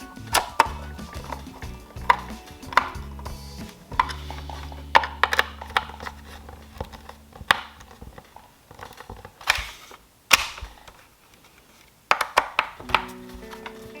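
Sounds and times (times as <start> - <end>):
low steady hum: 0.0 - 8.8.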